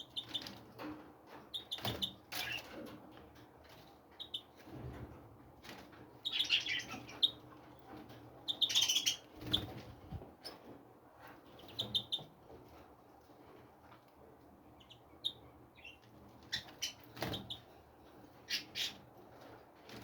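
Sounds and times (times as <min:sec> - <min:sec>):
songbirds chirping and twittering: 0:00.0 - 0:20.0.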